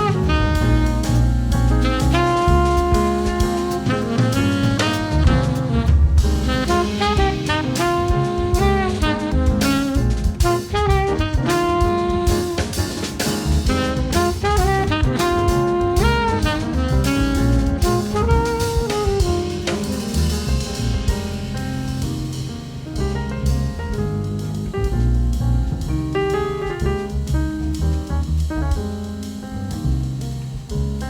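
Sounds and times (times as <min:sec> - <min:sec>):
saxophone melody: 0:00.0 - 0:20.0
drum kit beat: 0:00.0 - 0:31.0.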